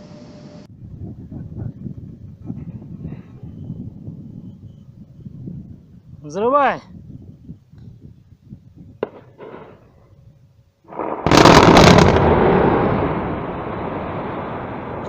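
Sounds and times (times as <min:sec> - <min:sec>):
loud blast boom: 0:10.9 - 0:15.0.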